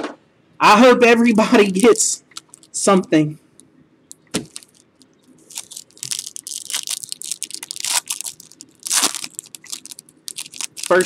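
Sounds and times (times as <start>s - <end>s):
wrapper crinkling and tearing: 1.6s - 2.8s, 4.5s - 11.0s.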